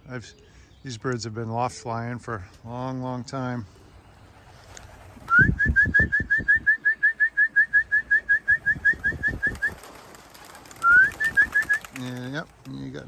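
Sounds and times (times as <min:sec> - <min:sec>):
rapid chirping notes: 0:04.8 - 0:12.5
rising whistle: 0:05.3 - 0:09.8, 0:10.8 - 0:11.8.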